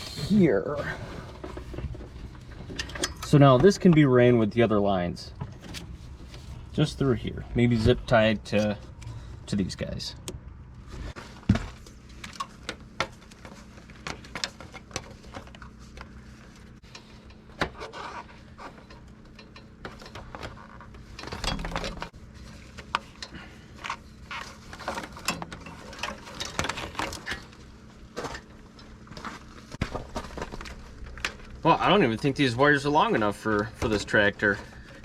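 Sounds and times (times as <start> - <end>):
hands handling electrical wires: 10.3 - 32.0.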